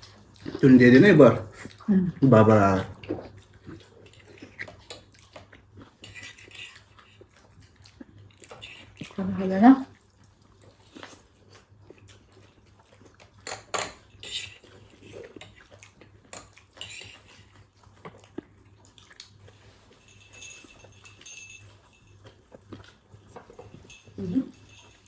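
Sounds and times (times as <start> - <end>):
cutlery and dishes clinking: 13.4 - 15.6, 16.3 - 17.5, 23.3 - 25.0.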